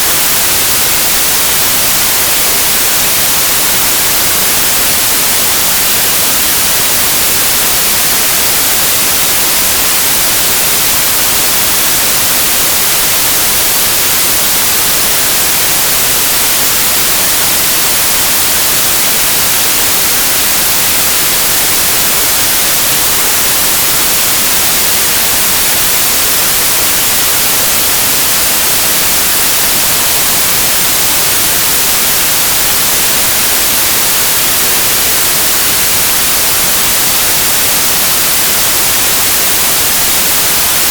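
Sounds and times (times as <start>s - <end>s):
white noise hiss: 0.0s - 40.9s.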